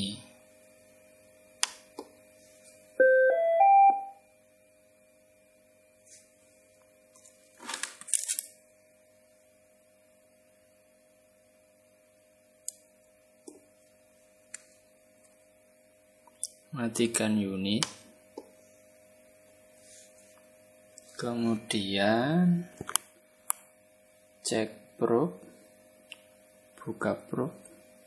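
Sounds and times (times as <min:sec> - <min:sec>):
rising electronic beep tune: 0:03.0 - 0:04.2.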